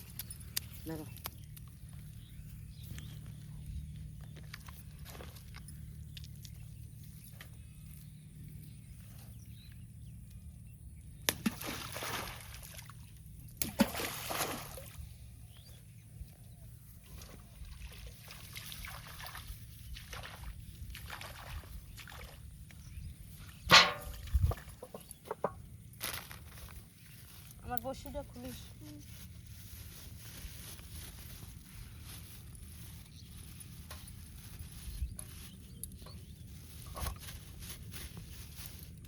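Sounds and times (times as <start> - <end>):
water splashing and sloshing: 11.3 - 15.2, 17.0 - 27.6.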